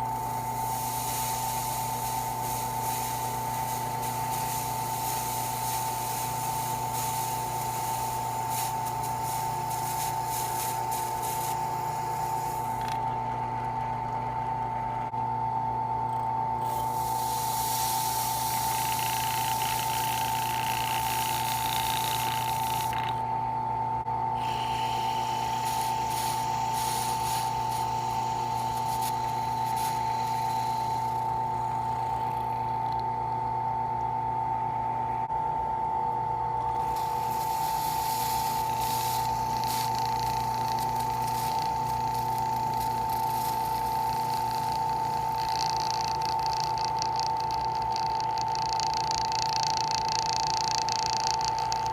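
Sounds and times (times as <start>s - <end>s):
drill bit hissing and scraping: 0.0s - 13.0s, 16.6s - 23.2s, 24.4s - 32.8s, 36.8s - 51.9s
electric drill motor whining: 16.6s - 23.3s, 24.4s - 33.0s, 36.6s - 51.9s.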